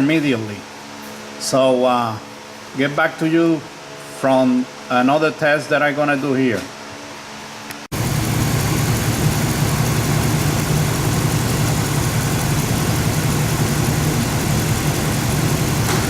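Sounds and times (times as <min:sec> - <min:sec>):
van engine idling: 0:07.9 - 0:16.0.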